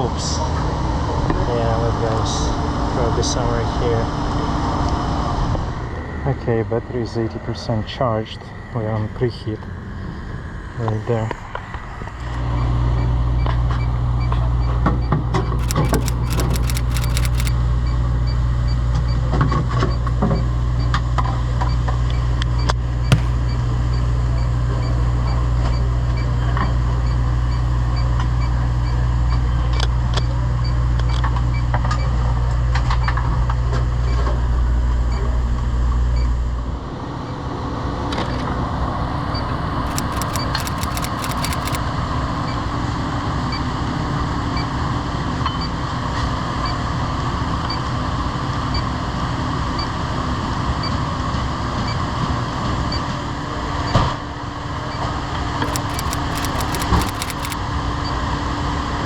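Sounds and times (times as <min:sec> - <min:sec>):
leak detector ticking: 0:15.6 - 0:17.5, 0:39.9 - 0:41.8, 0:55.7 - 0:57.6
sharp clicks: 0:15.6 - 0:17.5, 0:23.1 - 0:23.6, 0:39.9 - 0:41.8, 0:55.6 - 0:57.6.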